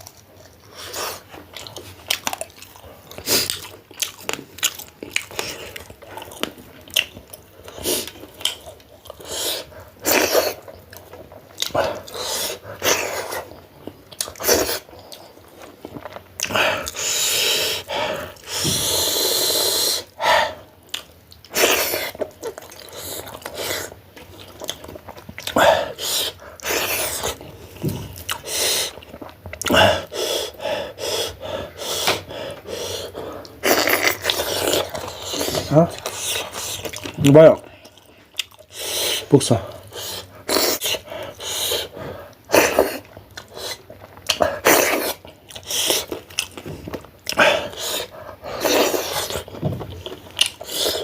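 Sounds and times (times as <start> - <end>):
person blowing hissing breaths: 16.9 - 20.6.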